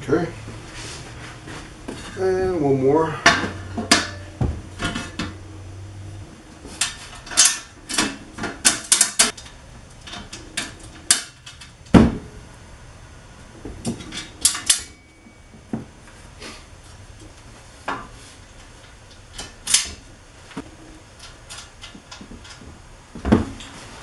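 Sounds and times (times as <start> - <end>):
bolts and nuts clinking: 6.8 - 11.8, 13.8 - 15.2.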